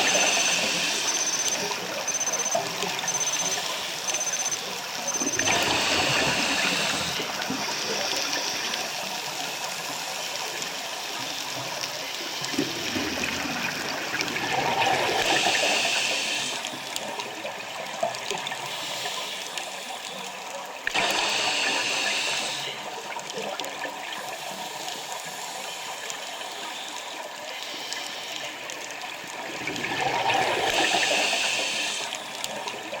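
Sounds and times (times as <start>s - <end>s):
regulator bubbling exhale: 5.3s - 8.1s.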